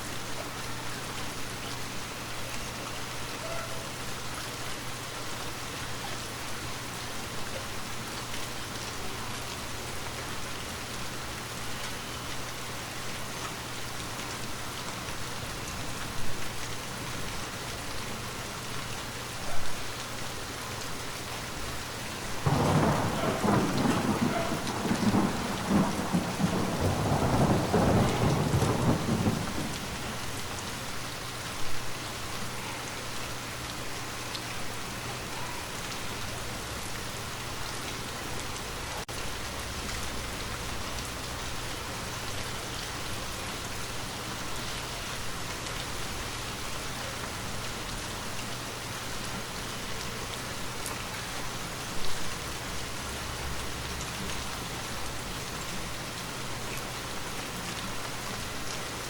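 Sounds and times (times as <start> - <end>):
steady rain falling: 0.0 - 59.0
thunder rolling: 22.4 - 30.7.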